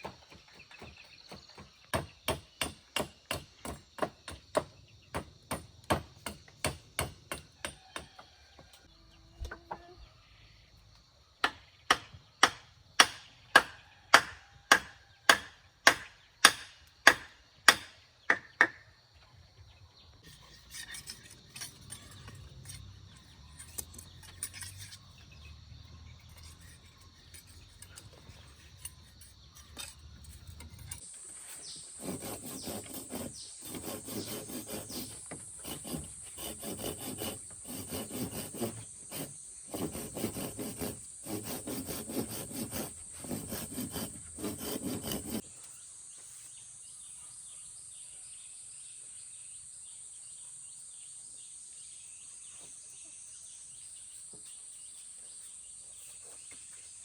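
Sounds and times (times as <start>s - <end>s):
scraping: 20.2s - 25.4s, 26.1s - 45.4s
rapid rubbing strokes: 31.3s - 45.4s.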